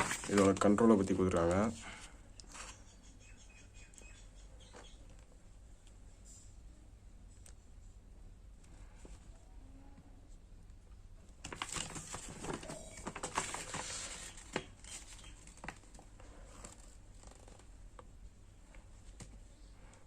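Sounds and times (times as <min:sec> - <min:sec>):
paper and packaging rustling: 0:00.0 - 0:02.8, 0:11.4 - 0:18.1.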